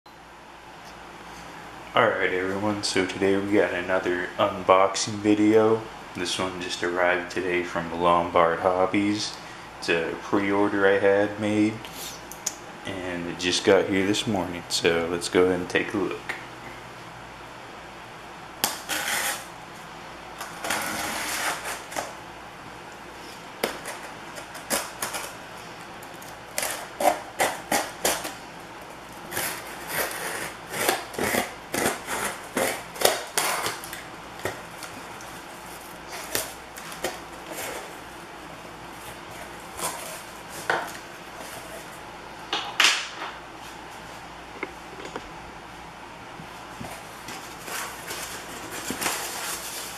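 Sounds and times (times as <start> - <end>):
packing rustling and scraping: 46.8 - 49.9.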